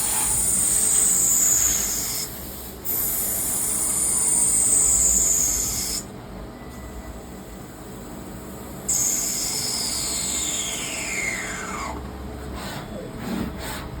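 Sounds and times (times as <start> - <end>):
high-pitched lathe whine: 8.8 - 12.0.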